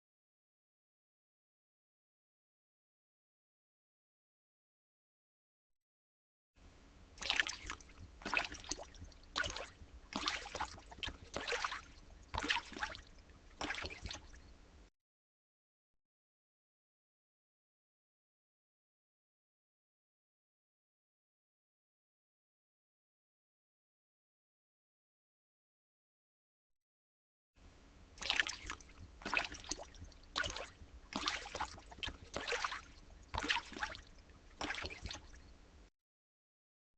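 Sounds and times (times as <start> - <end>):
wet squelching: 7.2 - 14.4, 28.2 - 35.4.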